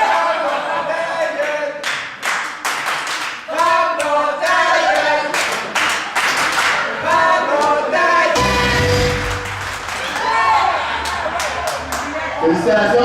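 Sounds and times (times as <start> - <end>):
rhythmic clapping: 1.4 - 7.8, 8.4 - 10.3
crowd chanting: 3.5 - 5.8, 6.7 - 11.0.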